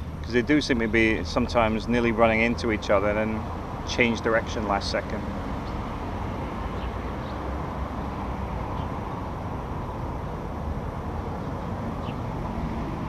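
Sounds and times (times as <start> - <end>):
low outdoor rumble: 0.0 - 13.0
swifts calling: 12.0 - 12.3.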